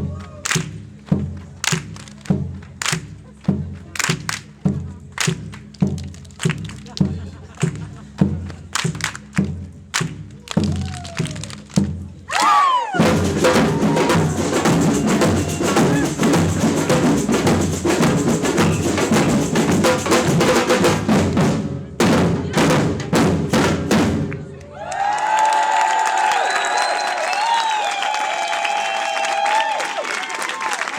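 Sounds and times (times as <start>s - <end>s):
samba drum group playing: 13.0s - 24.5s.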